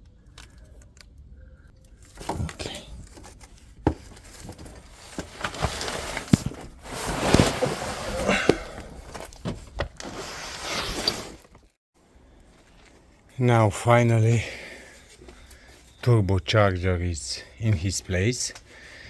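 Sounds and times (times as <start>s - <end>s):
rustling and scraping: 2.0s - 11.8s.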